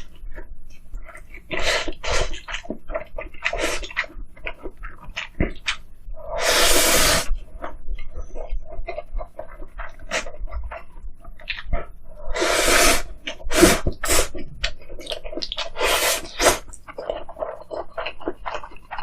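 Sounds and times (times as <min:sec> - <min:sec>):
close chewing and bites: 0:07.5 - 0:12.0, 0:13.1 - 0:19.0.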